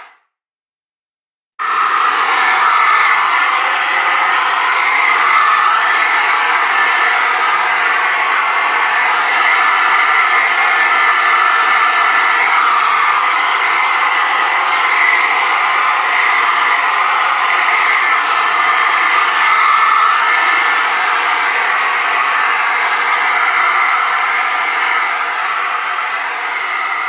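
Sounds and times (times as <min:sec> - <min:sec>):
hairdryer running: 0:01.6 - 0:27.0.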